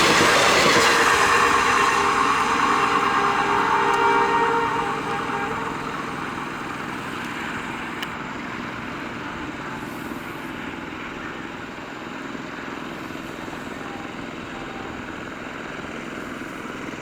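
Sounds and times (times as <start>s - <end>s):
train horn: 0.0s - 8.1s, 13.4s - 15.4s
train passing rumble: 0.0s - 17.0s.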